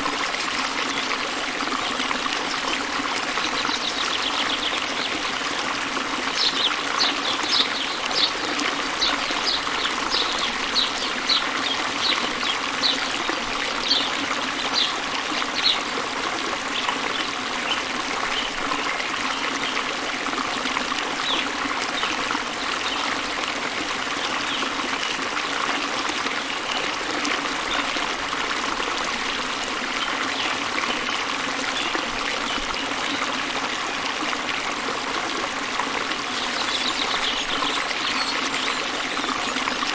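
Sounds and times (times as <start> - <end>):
small waterfall rushing: 0.0 - 39.9
bird chirping: 6.4 - 13.1, 36.4 - 39.6.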